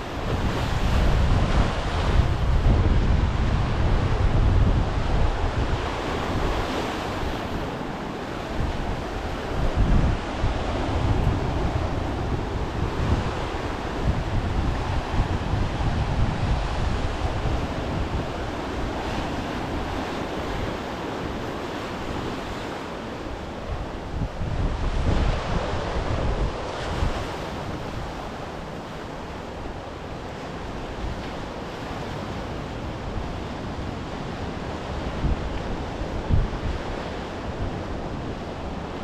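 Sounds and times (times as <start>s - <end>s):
sea waves washing onto beach: 0.0s - 39.0s
wind buffeting microphone: 0.0s - 39.0s.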